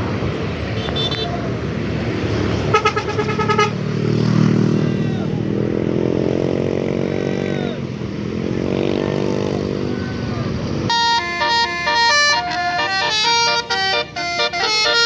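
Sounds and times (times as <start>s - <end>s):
rapidly pulsing horn: 2.7s - 3.8s, 10.9s - 15.0s.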